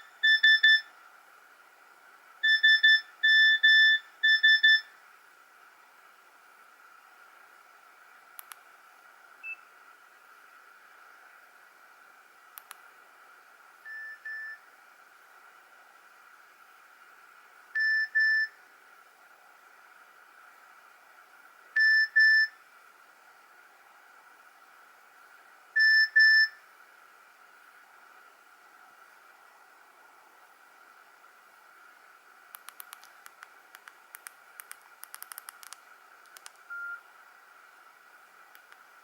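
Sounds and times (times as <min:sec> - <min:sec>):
faint steady hiss: 0:00.0 - 0:39.0
faint click: 0:08.4 - 0:08.6, 0:12.6 - 0:12.8, 0:32.5 - 0:36.7, 0:38.5 - 0:38.8.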